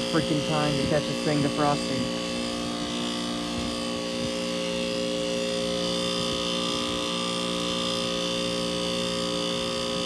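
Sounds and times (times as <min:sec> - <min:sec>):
compressor electrical hum: 0:00.0 - 0:10.0
fan and airflow hiss: 0:00.0 - 0:10.0.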